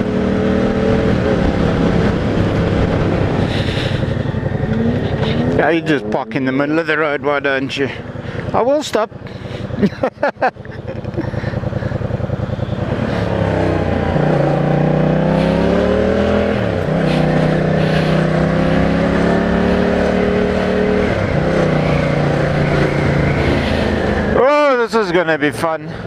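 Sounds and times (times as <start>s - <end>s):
motorcycle engine accelerating: 0.0s - 26.0s.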